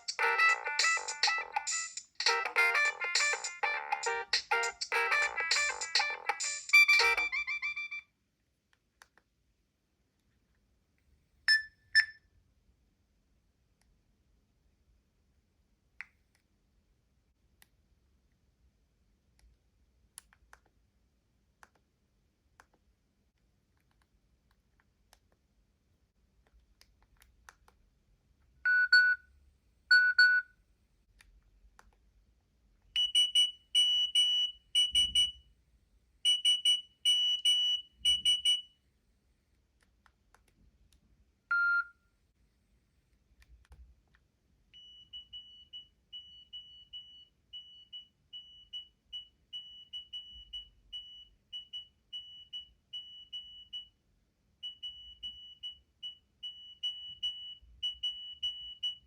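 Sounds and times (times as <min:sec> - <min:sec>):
phone alert tones: 0:00.0 - 0:08.0, 0:41.5 - 0:42.0.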